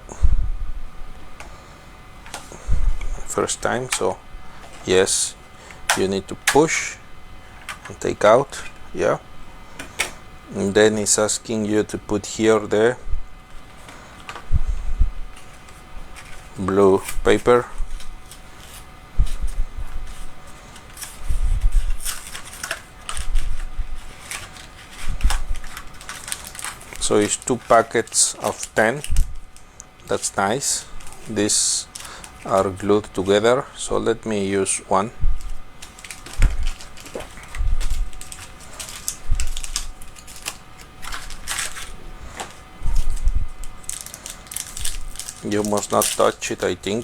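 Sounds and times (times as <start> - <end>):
paper packets being handled: 1.4 - 47.0.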